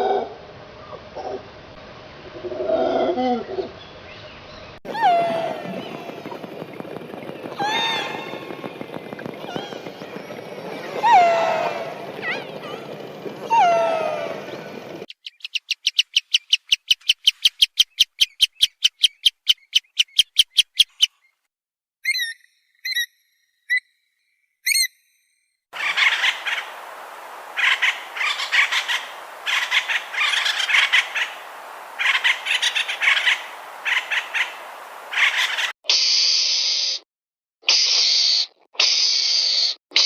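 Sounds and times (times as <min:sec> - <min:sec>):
scratchy bird calls: 0:05.2 - 0:21.3, 0:25.8 - 0:35.8
bird chirps: 0:05.6 - 0:21.4, 0:22.0 - 0:26.8, 0:27.6 - 0:35.7.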